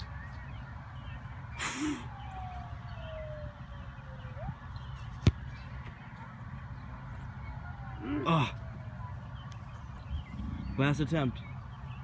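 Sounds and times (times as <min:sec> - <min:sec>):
low rumble of wind: 0:00.0 - 0:12.0
soccer ball kick thump: 0:05.2 - 0:05.5.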